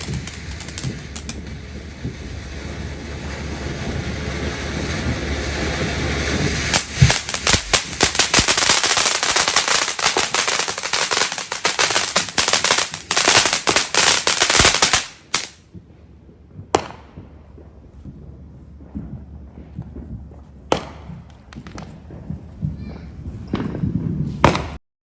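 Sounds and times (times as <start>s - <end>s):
rising hiss: 0.0s - 15.6s
firecrackers crackling pops: 0.0s - 24.8s.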